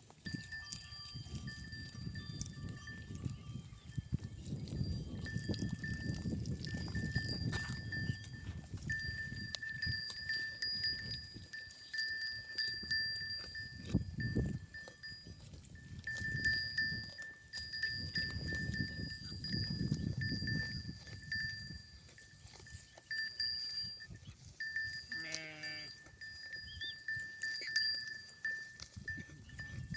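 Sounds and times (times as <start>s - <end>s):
sheep bells clanking: 0.0s - 29.9s
sheep bleating: 25.1s - 26.1s.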